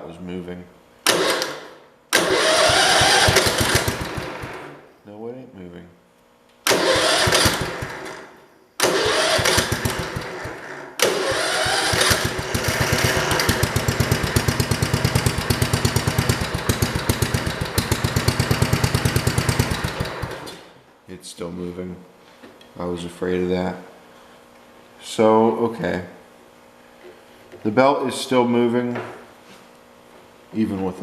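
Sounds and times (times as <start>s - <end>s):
garden tractor engine starting and running: 2.2s - 4.8s, 6.7s - 20.7s.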